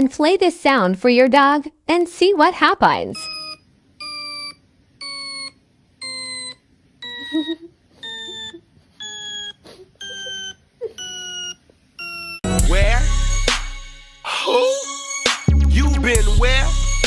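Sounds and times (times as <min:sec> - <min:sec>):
electronic beeps: 0:03.2 - 0:12.4
short faint squeaks: 0:06.1 - 0:12.4.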